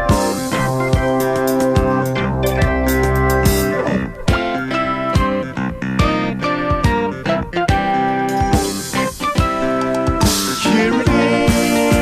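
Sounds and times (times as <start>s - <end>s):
psychedelic rock music: 0.0s - 12.0s
plucked guitar notes: 0.3s - 7.2s.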